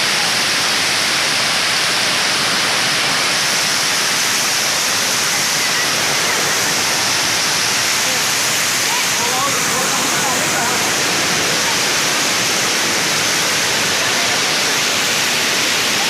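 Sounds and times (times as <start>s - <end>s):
heavy rain: 0.0s - 16.0s
running water: 0.0s - 16.0s.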